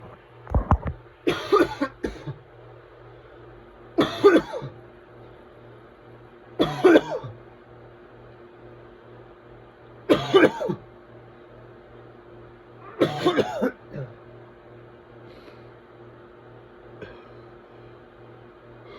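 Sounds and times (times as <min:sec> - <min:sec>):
person coughing: 0:01.3 - 0:02.4, 0:04.0 - 0:04.8, 0:06.6 - 0:07.4, 0:10.1 - 0:10.8, 0:13.0 - 0:14.2.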